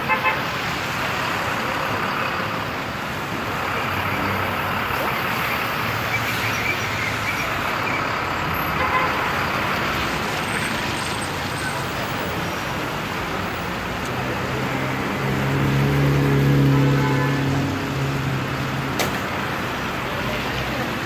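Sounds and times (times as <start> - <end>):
city street traffic: 0.0 - 21.0.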